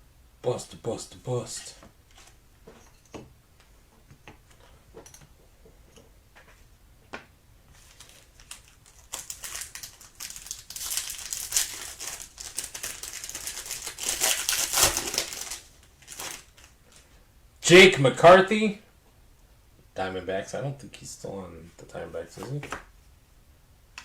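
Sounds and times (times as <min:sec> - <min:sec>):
foil wrapper crinkling: 0:07.7 - 0:17.1.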